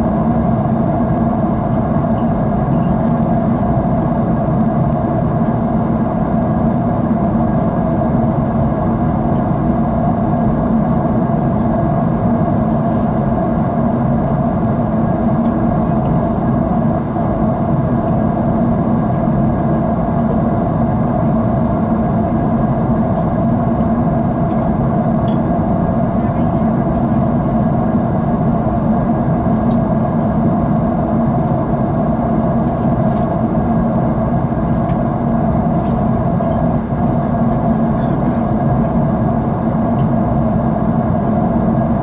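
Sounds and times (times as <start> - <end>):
jet engine rumble in cabin: 0.0 - 42.0.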